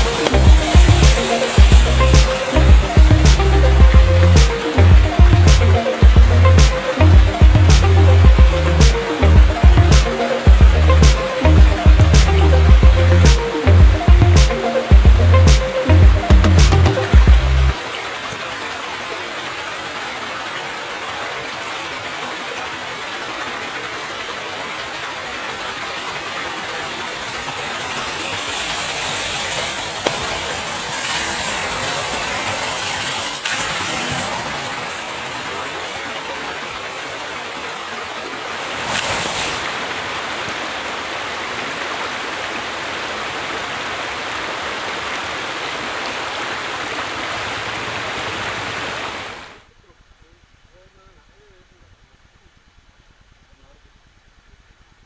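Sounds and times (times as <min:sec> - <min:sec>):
burning matches hissing: 0:00.0 - 0:02.7, 0:28.0 - 0:34.7, 0:38.7 - 0:39.7.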